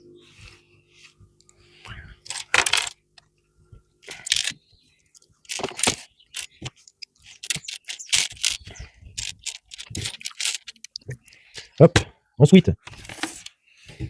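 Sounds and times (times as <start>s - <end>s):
plastic bricks clattering: 2.3s - 3.0s, 4.0s - 4.6s, 5.4s - 11.7s.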